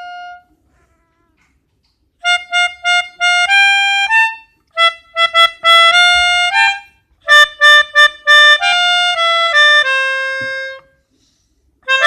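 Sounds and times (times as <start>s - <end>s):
musical horn playing a tune: 0.0s - 0.6s, 2.2s - 11.0s.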